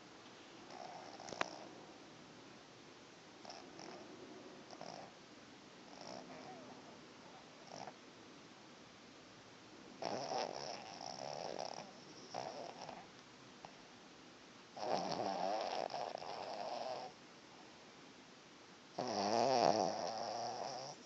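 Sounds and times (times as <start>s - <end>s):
person snoring: 14.8s - 17.1s, 19.0s - 21.0s.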